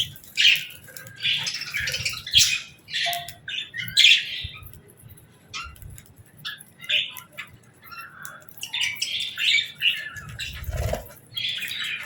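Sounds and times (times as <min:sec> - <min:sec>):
budgerigars chirping: 0:00.4 - 0:04.6.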